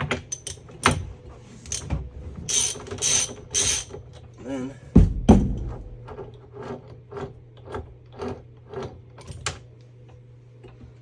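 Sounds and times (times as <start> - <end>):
ratchet wrench clicking: 2.5 - 3.9.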